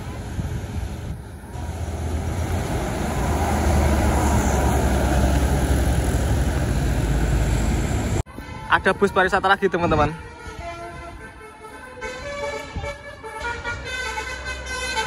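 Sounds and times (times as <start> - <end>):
bus engine rumbling: 0.0 - 8.7
road noise: 0.0 - 15.0.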